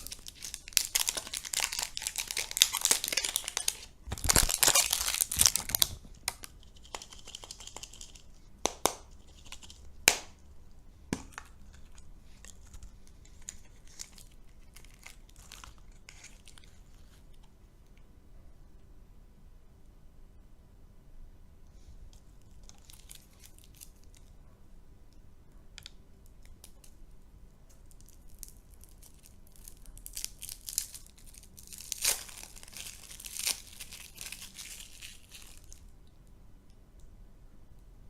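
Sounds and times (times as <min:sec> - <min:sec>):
plastic wrapper crinkling: 0:00.0 - 0:10.4, 0:11.1 - 0:17.4, 0:22.2 - 0:24.3, 0:27.7 - 0:35.9.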